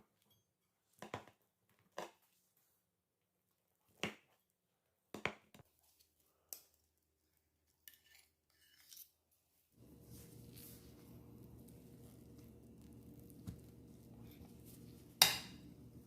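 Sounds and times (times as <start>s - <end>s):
soft scraping: 9.8s - 16.0s.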